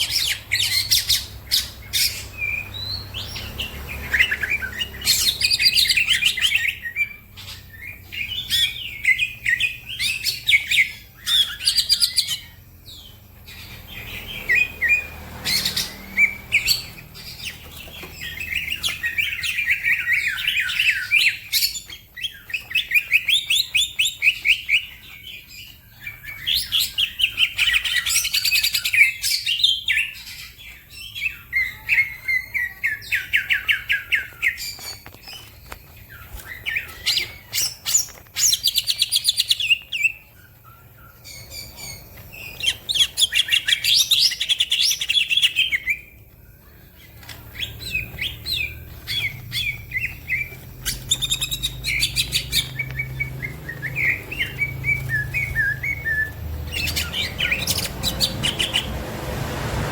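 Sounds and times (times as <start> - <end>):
bird singing fast high trills: 47.6 - 59.0.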